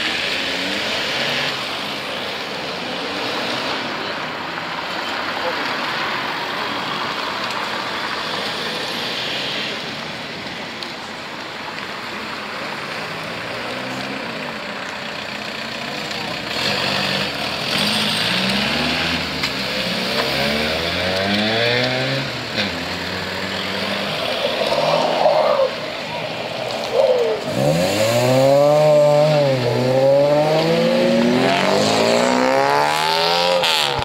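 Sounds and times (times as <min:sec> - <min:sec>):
car engine revving and accelerating: 0:00.0 - 0:04.3, 0:12.6 - 0:14.6, 0:15.7 - 0:34.0
street noise: 0:00.0 - 0:34.0.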